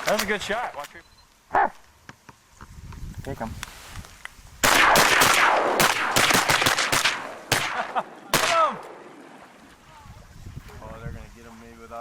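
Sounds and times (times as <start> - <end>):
shotguns firing: 4.6 - 9.4.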